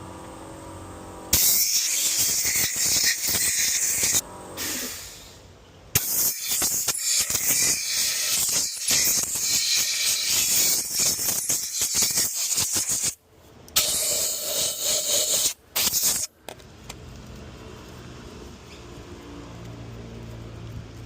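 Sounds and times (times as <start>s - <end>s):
steady hum: 0.0s - 6.0s
compressed air blow gun hissing: 1.3s - 13.2s, 13.8s - 16.3s.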